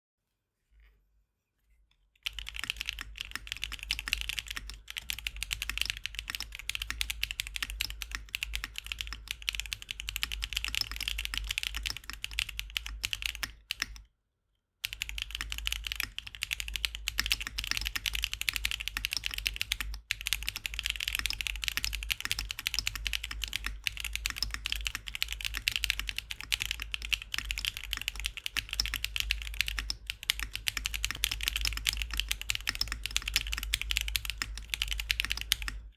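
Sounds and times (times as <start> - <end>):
fast mechanical keyboard typing: 2.2 - 14.0, 14.8 - 35.9.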